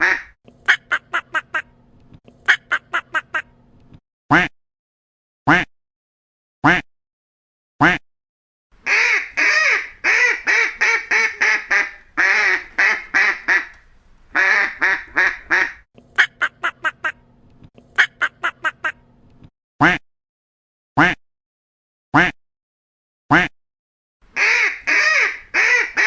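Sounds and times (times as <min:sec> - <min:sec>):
ducks quacking: 0:00.0 - 0:00.3, 0:08.8 - 0:15.8, 0:24.3 - 0:26.0
faint steady hum: 0:08.8 - 0:15.8.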